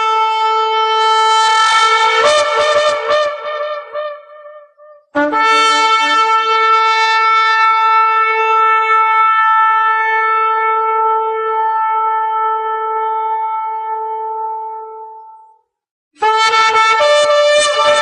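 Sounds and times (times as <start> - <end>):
ram's horn blast: 0.3 - 4.5, 5.2 - 14.1.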